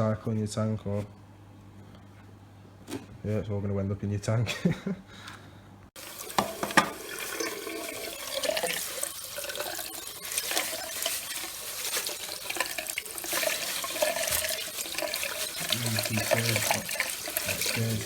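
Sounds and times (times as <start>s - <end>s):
tap water running in a sink: 6.0s - 18.0s.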